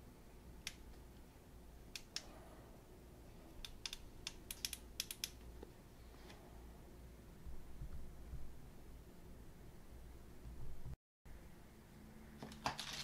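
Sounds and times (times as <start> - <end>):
clicks of small plastic parts: 3.6 - 5.4.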